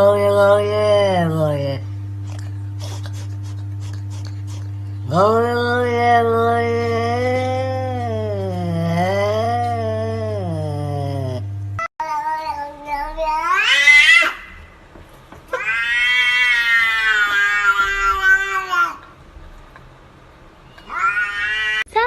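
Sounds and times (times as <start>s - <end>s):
cat meowing loudly: 15.5s - 19.0s, 20.8s - 22.0s.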